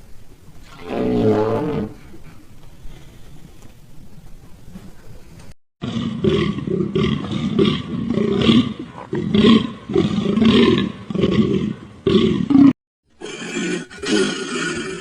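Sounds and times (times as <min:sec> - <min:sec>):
large animal roaring: 0:00.6 - 0:02.1.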